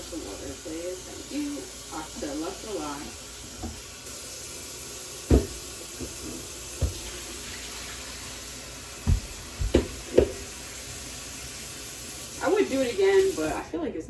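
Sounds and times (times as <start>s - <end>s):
tap water running into sink: 0.0s - 13.7s
knocks and thumps: 3.6s - 3.8s, 5.3s - 7.1s, 9.0s - 10.5s.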